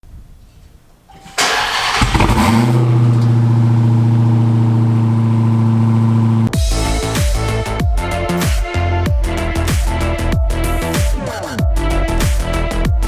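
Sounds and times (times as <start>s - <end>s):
engine cranking: 1.1s - 6.5s
car engine idling: 1.1s - 7.7s.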